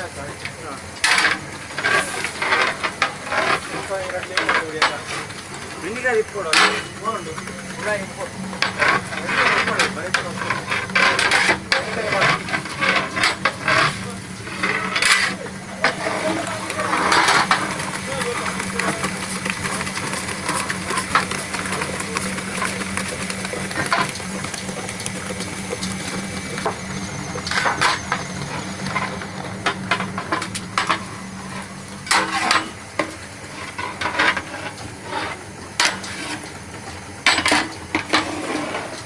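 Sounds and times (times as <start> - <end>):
steady low hum: 0.0 - 39.0
metal utensil scraping a pot: 8.6 - 17.7.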